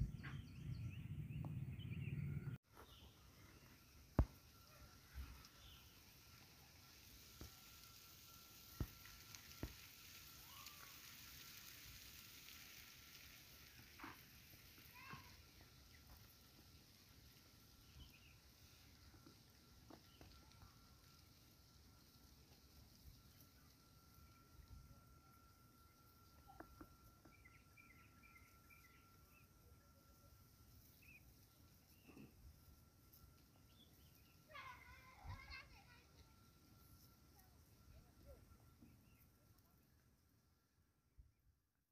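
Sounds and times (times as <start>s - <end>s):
faint bird chirps: 0.0s - 11.1s, 23.0s - 32.7s
faint outdoor hiss: 2.0s - 41.7s
steady thin high tone: 2.3s - 11.6s, 22.8s - 40.0s.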